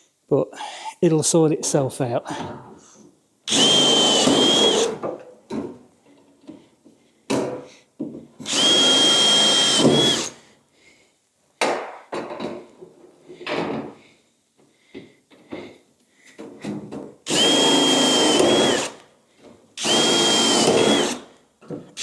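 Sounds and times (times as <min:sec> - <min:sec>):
power drill drilling through metal: 0:03.5 - 0:05.0, 0:08.4 - 0:10.4, 0:17.3 - 0:19.0, 0:19.8 - 0:21.3.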